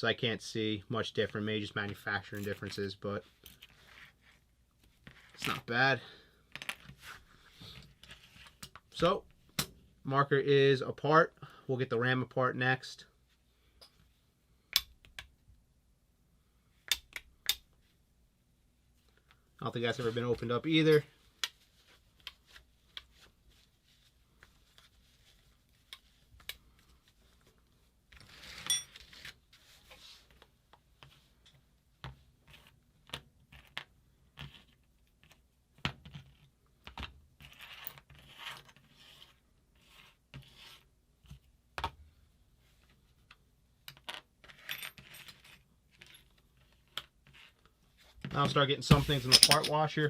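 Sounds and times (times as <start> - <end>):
small metal parts clinking: 49.2 - 49.8.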